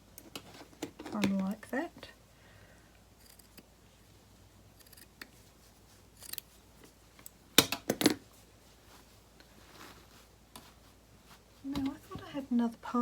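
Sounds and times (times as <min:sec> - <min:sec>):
scissors snipping fabric: 0:03.2 - 0:03.7, 0:04.8 - 0:05.4, 0:06.2 - 0:06.5
fabric rustle: 0:05.3 - 0:07.6, 0:08.2 - 0:13.0.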